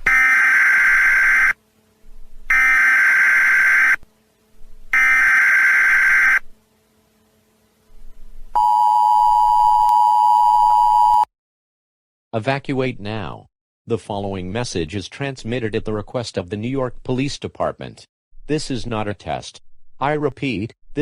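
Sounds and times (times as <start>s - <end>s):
screeching digital data bursts: 0.0s - 1.6s, 2.5s - 4.0s, 5.0s - 6.4s.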